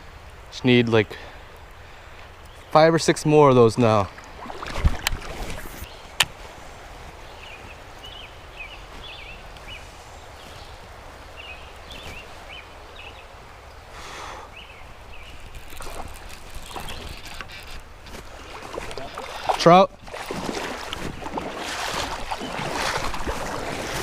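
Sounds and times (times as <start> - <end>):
creek water rushing: 0.0 - 7.2, 7.8 - 24.0
small birds chirping: 7.2 - 17.8.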